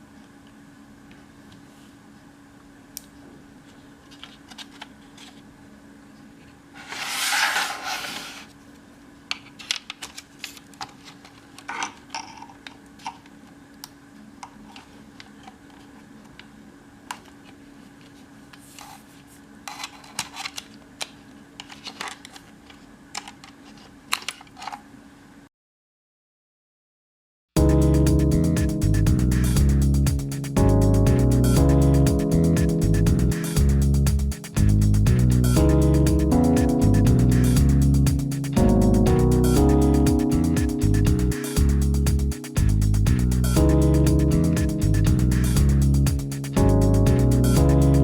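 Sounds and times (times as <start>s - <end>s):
scraping rustle: 6.8s - 8.5s.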